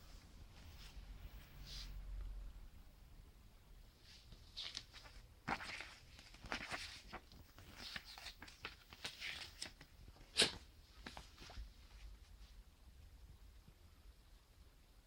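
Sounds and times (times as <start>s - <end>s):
packaging crinkly rustling: 4.5s - 11.6s.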